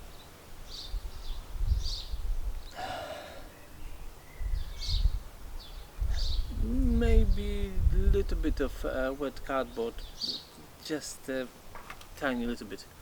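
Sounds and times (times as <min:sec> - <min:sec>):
birds chirping: 0:00.0 - 0:13.0
wind rumbling on microphone: 0:00.6 - 0:02.7, 0:03.8 - 0:10.2.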